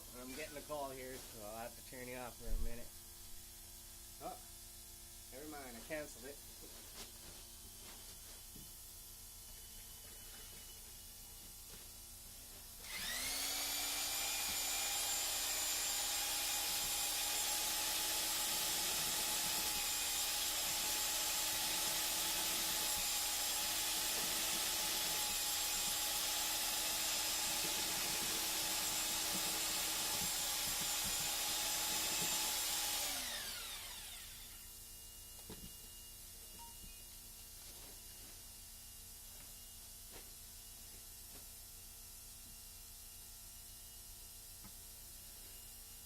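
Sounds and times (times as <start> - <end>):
electric drill mixing paddle: 12.8 - 34.8.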